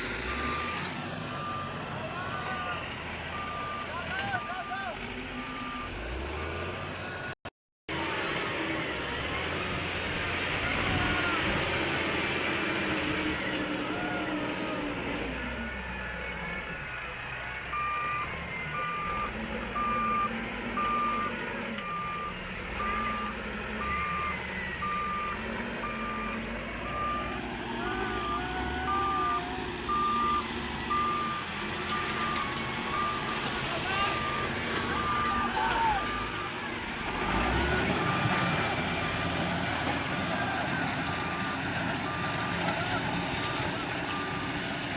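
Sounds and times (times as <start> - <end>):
diesel engine under load: 0.0 - 44.9
reversing alarm beeping: 0.2 - 7.4, 17.5 - 44.6.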